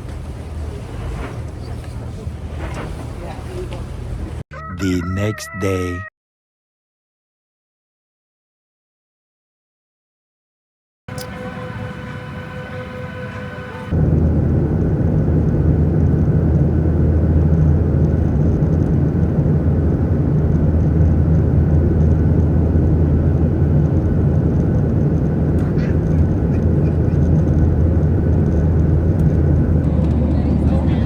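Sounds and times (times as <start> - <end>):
jet engine rumble in cabin: 0.0 - 4.4, 11.2 - 31.0.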